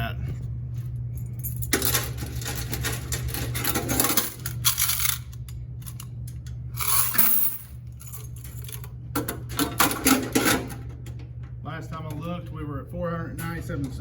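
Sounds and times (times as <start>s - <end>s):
steady low hum: 0.0s - 14.0s
coins clinking and clattering: 1.3s - 6.1s, 6.8s - 8.9s.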